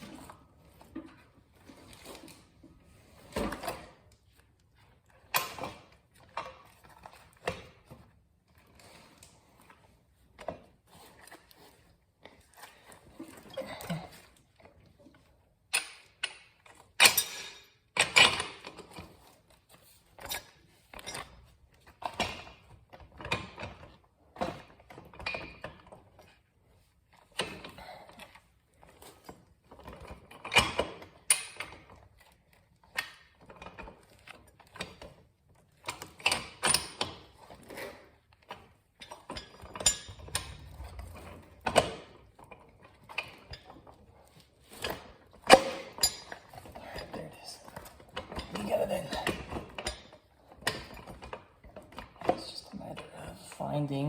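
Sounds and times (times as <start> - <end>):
metallic knocks and clanks: 39.0 - 43.7.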